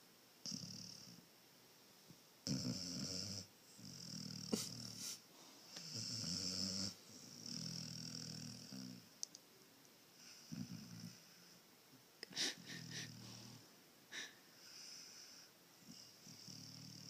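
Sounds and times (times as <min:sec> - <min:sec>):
dog snoring: 0:00.4 - 0:01.2, 0:02.4 - 0:09.1, 0:10.2 - 0:11.6, 0:12.7 - 0:13.6, 0:14.6 - 0:17.0.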